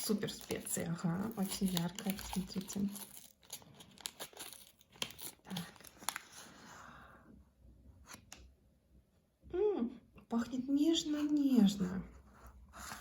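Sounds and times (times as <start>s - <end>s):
packaging crinkling and rustling: 0.0s - 6.7s.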